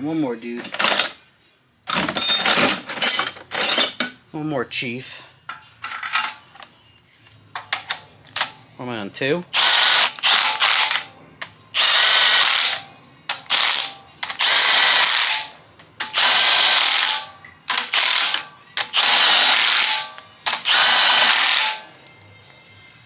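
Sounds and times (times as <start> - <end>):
power tool spinning bolts: 9.6 - 11.1, 11.8 - 21.9.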